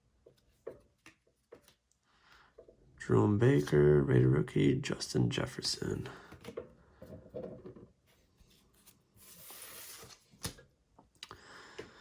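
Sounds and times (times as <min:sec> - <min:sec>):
trading cards sliding: 0:08.8 - 0:10.6.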